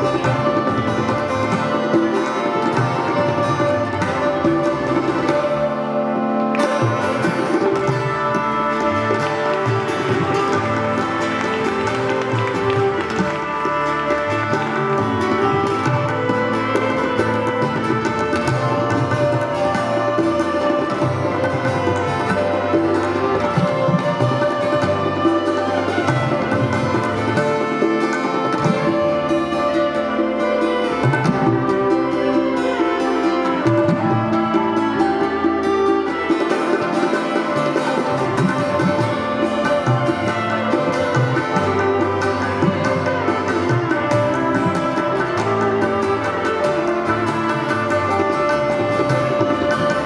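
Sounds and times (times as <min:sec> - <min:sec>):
sustained band chords: 0:00.0 - 0:50.0
steady percussion beat: 0:06.6 - 0:29.4.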